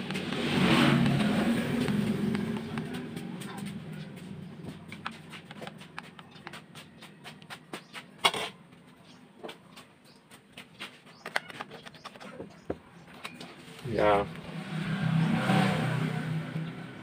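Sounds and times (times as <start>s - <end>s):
handling clicks and taps: 0.0s - 8.2s, 9.4s - 13.5s.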